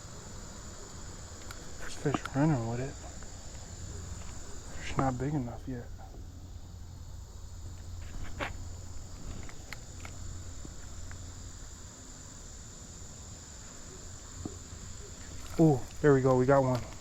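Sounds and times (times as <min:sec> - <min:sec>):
insects trilling: 0:00.0 - 0:17.0
faint ticks: 0:01.3 - 0:02.4.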